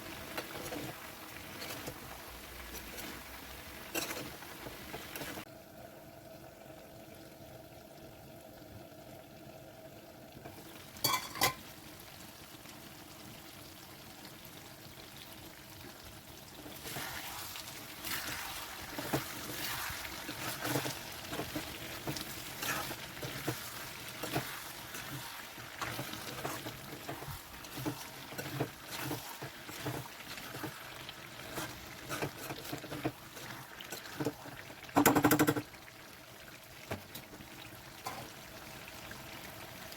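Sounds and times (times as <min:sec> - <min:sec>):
spoon scraping a pan: 0:00.3 - 0:02.0, 0:03.8 - 0:05.4, 0:11.0 - 0:11.6, 0:16.7 - 0:35.6, 0:38.0 - 0:38.4.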